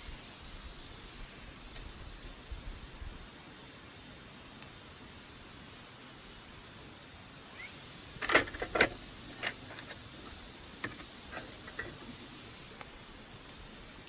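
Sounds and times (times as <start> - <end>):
firewood crackling and popping: 7.4 - 14.0.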